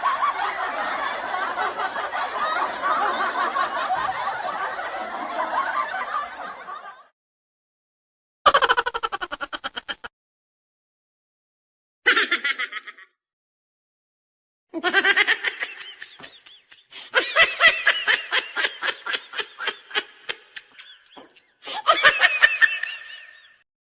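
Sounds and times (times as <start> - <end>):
person laughing: 8.5 - 10.1, 12.1 - 13.1, 14.8 - 23.6.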